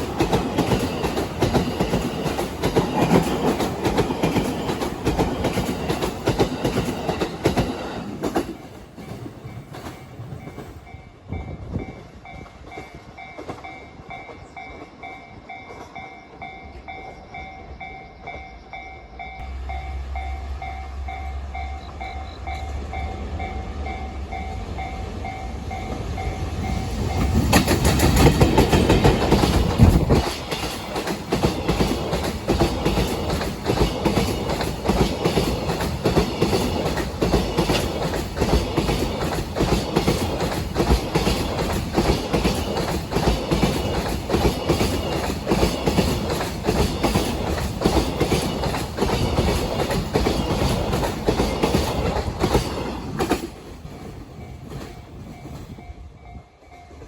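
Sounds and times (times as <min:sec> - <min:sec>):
train wheels knocking on rail joints: 0:00.0 - 0:10.8, 0:25.7 - 0:55.9.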